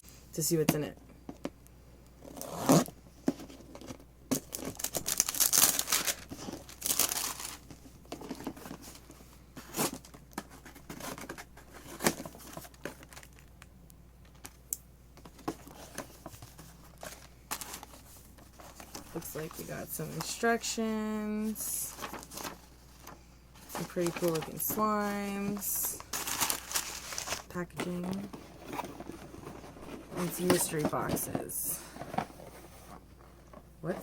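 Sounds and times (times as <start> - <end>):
packaging tearing and crinkling: 3.8 - 8.5, 23.7 - 27.5.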